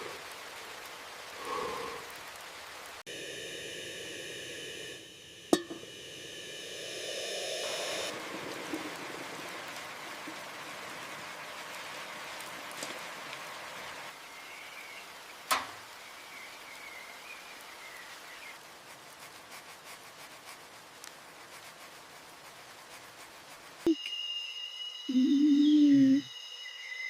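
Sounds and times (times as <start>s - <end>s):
rain hiss: 0.0s - 27.0s
faint wavering high call: 23.9s - 27.0s.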